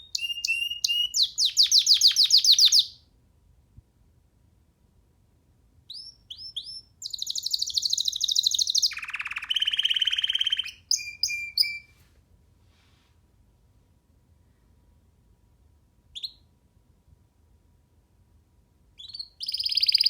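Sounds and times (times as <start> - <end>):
canary singing: 0.0 - 3.0, 5.9 - 11.9, 16.2 - 16.5, 19.0 - 20.0.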